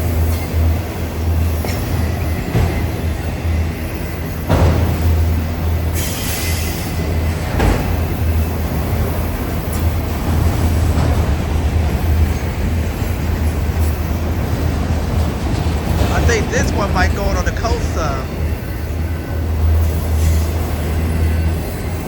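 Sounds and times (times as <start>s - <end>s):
freight train rumbling past: 0.0s - 22.0s.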